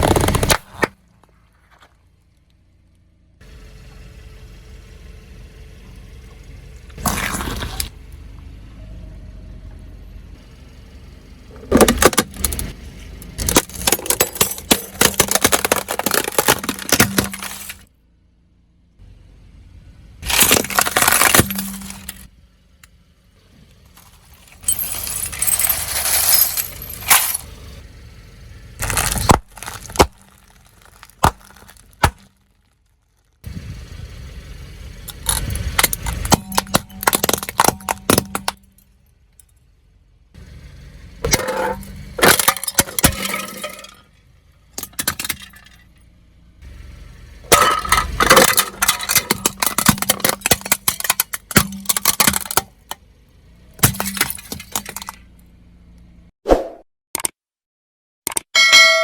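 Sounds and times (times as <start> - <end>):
objects crunching under car tyre: 0.0 - 3.1, 5.8 - 8.3, 11.5 - 17.9, 20.2 - 22.3, 23.4 - 27.8, 28.7 - 33.8, 34.9 - 38.8, 41.2 - 45.9, 47.4 - 55.4.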